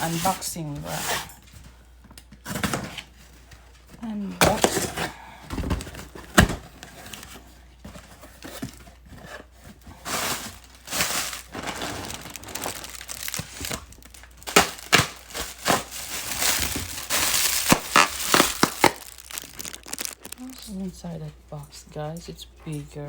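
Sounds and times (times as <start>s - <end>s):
packaging crinkling and tearing: 10.0s - 21.0s
sharp snaps and rustles: 10.4s - 20.9s.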